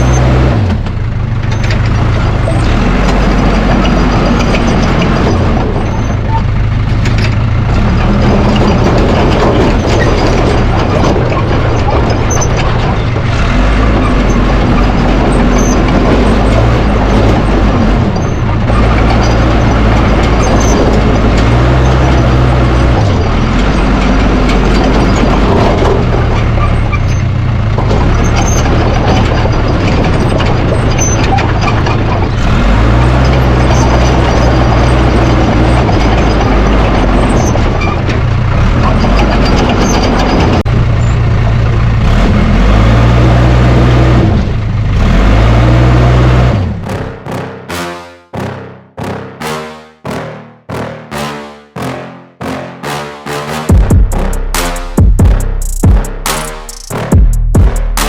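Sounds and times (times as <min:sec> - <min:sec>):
mechanical clatter: 0:00.0 - 0:32.4, 0:53.7 - 0:58.0
bulldozer diesel engine working: 0:00.0 - 0:58.0.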